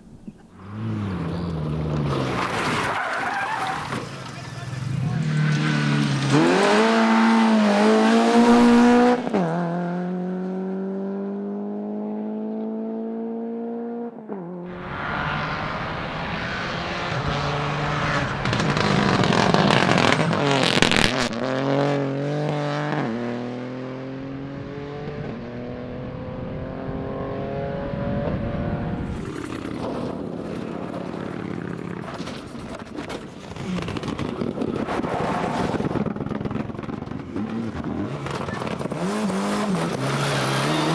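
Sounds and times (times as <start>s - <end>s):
rally car engines revving: 0.1s - 40.9s
car passing by: 0.6s - 12.0s, 14.7s - 31.5s.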